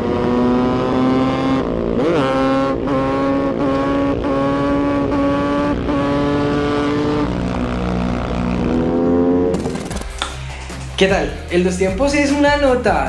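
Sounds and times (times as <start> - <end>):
motorcycle engine revving high: 0.0 - 10.1.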